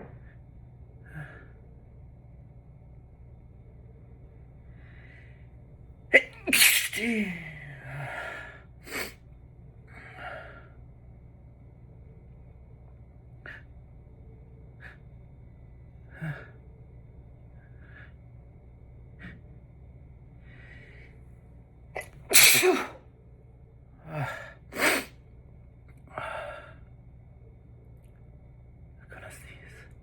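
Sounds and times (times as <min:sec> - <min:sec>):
person sneezing: 0:06.1 - 0:07.6, 0:22.0 - 0:23.0.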